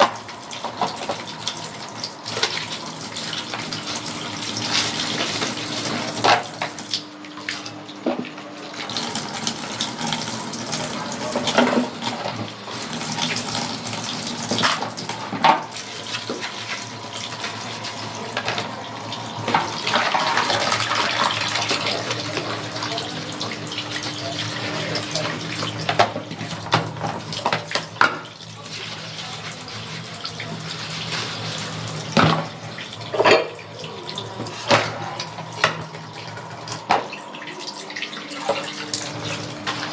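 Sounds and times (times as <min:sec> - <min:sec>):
tap water running and splashing: 0:00.0 - 0:39.9
dishes clinking: 0:32.2 - 0:39.9.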